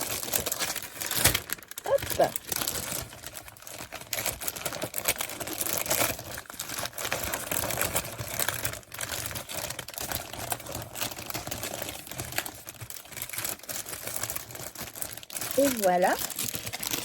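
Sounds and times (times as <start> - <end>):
packaging crinkling: 0.0 - 17.0.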